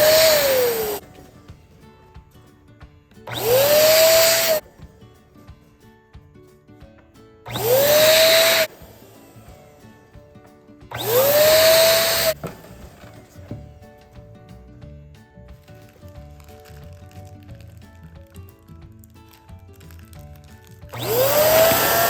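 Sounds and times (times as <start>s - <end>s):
electric air pump motor: 0.0s - 1.4s, 3.3s - 4.9s, 7.5s - 10.3s, 10.9s - 13.8s, 20.4s - 22.0s
quiet background music: 0.0s - 22.0s.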